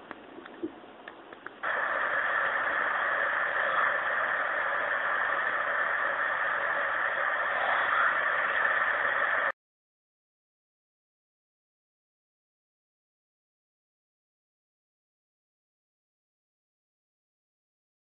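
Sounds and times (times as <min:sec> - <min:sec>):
faint clicks: 0:00.0 - 0:03.1
static-like hiss: 0:00.0 - 0:09.6.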